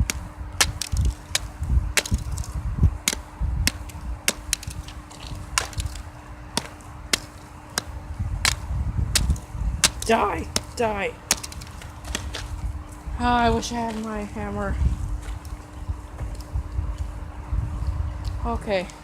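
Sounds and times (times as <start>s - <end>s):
low thuds: 0.0s - 13.2s.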